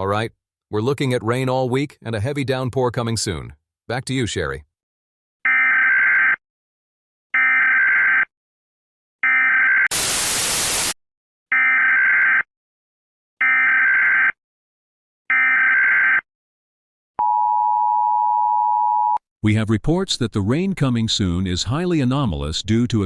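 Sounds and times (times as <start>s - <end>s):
buzzy digital tone bursts: 9.9s - 11.0s
loud static hiss: 9.9s - 11.0s.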